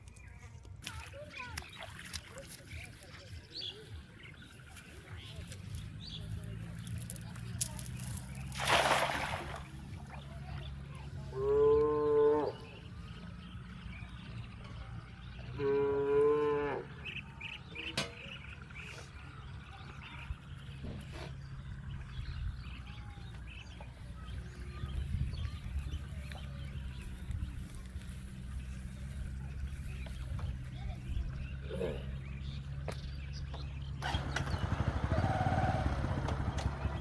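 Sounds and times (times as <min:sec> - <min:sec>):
cow mooing: 0:11.3 - 0:12.6, 0:15.6 - 0:16.9.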